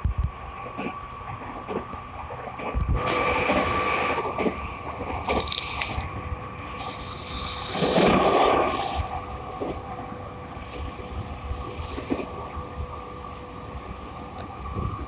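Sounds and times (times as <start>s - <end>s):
train rumble: 0.0s - 15.0s
loud rushing surge: 3.0s - 9.8s.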